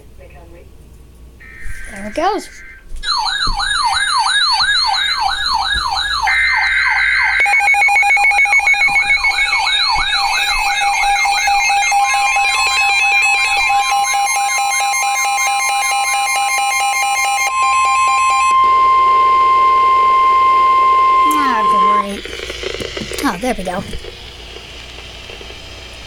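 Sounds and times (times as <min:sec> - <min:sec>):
fast pulsing alarm beeps: 0:01.4 - 0:22.2
siren-like sweeping tone: 0:01.4 - 0:22.2
steady pitched tone: 0:02.5 - 0:24.0
steady tone burst: 0:06.0 - 0:15.7, 0:17.4 - 0:23.8.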